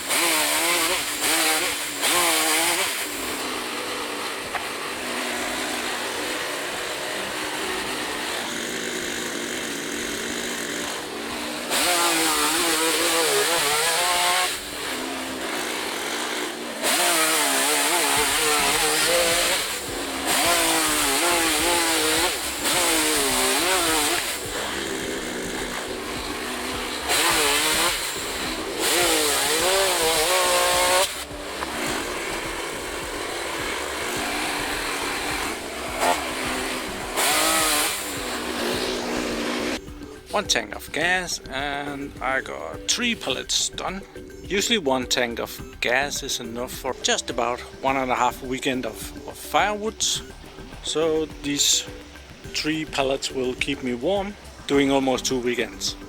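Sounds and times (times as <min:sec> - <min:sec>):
chainsaw idling and revving: 0:00.0 - 0:56.0.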